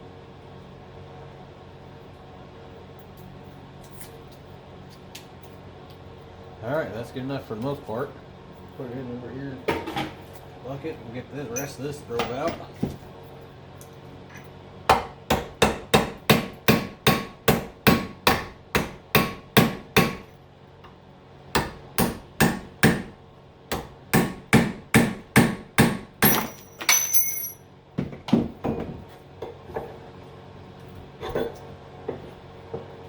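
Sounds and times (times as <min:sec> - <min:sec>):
hammer striking metal punch: 0:14.9 - 0:20.2, 0:23.7 - 0:27.6.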